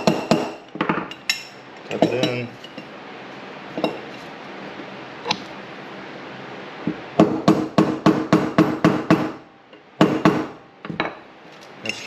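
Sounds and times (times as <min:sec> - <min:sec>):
hammer striking a metal punch: 0:00.0 - 0:01.0.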